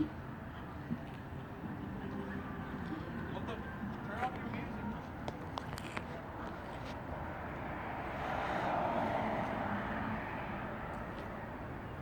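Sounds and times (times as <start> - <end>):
outdoor background noise: 0.0 - 12.0
vehicle passing: 7.0 - 12.0.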